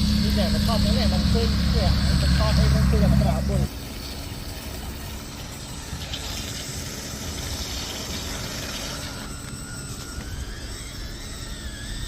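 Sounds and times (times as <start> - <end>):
low rumble: 0.0 - 3.7
small electric motor whining: 0.0 - 12.0
steady hiss: 0.0 - 12.0.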